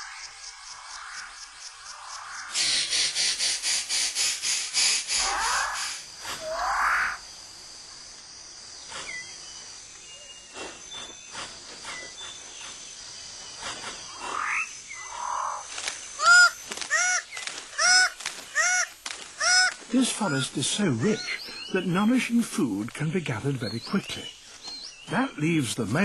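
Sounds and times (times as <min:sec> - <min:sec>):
high insect hum: 0:00.0 - 0:26.0
loud short bird calls: 0:02.4 - 0:07.2, 0:13.5 - 0:22.0
rising call: 0:04.8 - 0:07.3
faint bird chirps and whistles: 0:08.8 - 0:15.4, 0:23.6 - 0:25.4.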